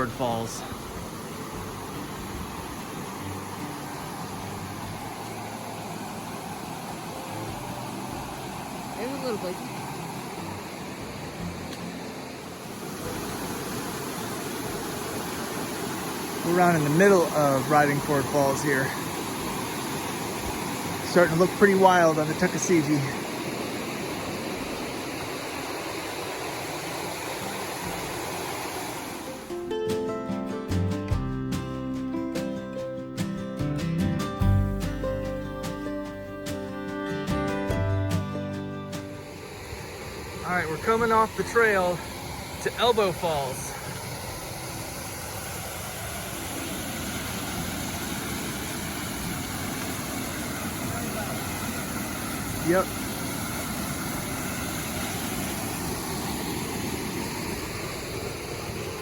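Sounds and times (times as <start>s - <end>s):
acoustic guitar music: 0.0s - 23.2s, 29.2s - 45.7s
waterfall rushing: 0.0s - 29.6s, 39.0s - 59.0s.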